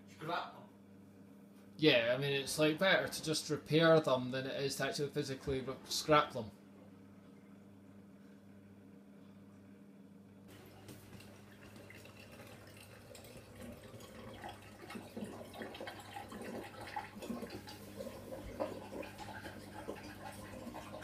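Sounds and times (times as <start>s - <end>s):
steady low hum: 0.0s - 21.0s
water splashing in washing machine: 10.5s - 21.0s.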